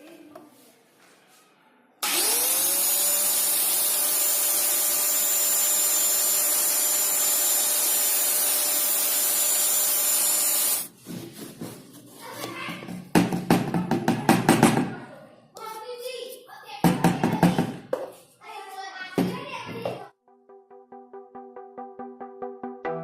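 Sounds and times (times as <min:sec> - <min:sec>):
angle grinder whining: 0:02.0 - 0:10.9.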